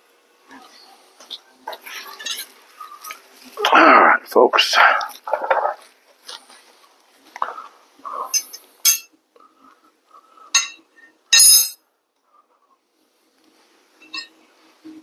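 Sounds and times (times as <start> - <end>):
quiet handling sounds: 4.5 - 10.3, 12.1 - 15.0
metal hand tools clinking: 8.3 - 9.1, 11.4 - 11.8.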